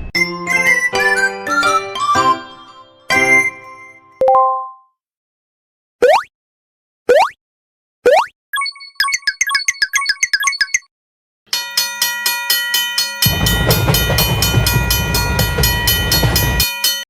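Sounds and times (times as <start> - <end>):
crossing warning bells clanging: 11.5 - 17.0
passing train rumble: 13.2 - 17.0.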